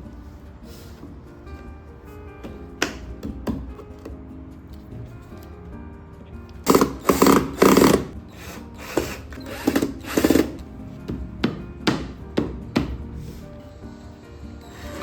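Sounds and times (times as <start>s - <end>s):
soft background music: 0.0s - 15.0s
power tool bursts: 6.7s - 10.6s.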